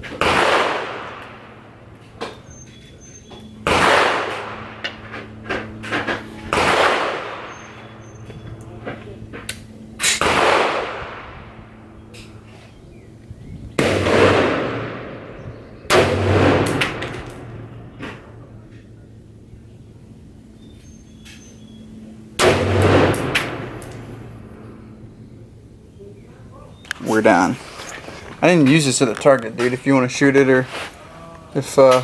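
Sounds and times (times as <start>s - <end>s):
rifle shots with echo: 0.0s - 1.8s, 3.6s - 4.8s, 6.5s - 8.0s, 10.0s - 11.6s, 13.8s - 18.4s, 22.4s - 24.9s.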